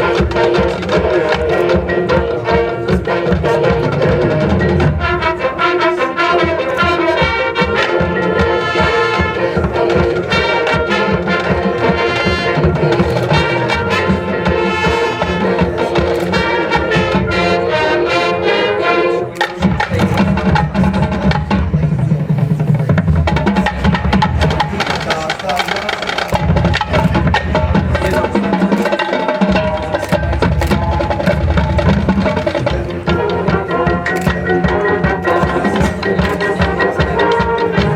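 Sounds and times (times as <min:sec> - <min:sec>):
brass sustaining chords: 0:00.0 - 0:25.3
drumline percussion: 0:00.0 - 0:37.9.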